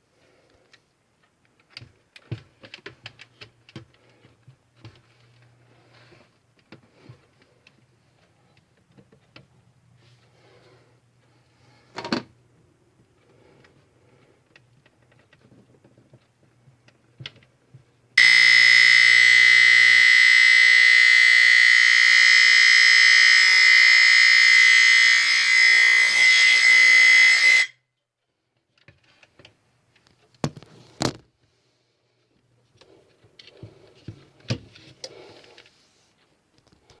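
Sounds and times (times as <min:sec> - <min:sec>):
smoke detector alarm tone: 0:18.2 - 0:27.7.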